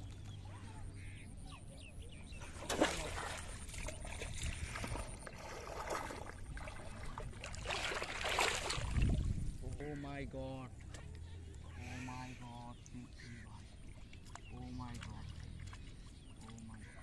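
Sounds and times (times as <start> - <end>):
water splashing and sloshing: 2.2 - 17.0.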